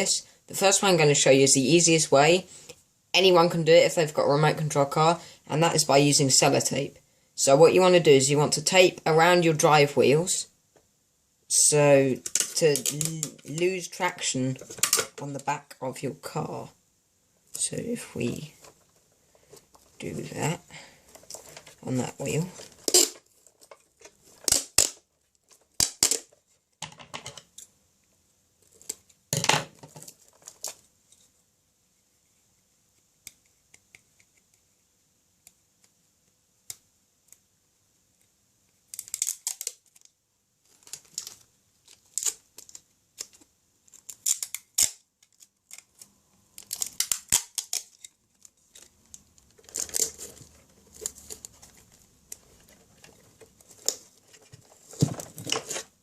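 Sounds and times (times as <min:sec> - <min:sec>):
tape pulled off roll and torn: 0:22.8 - 0:25.1, 0:38.9 - 0:40.1, 0:40.8 - 0:52.4.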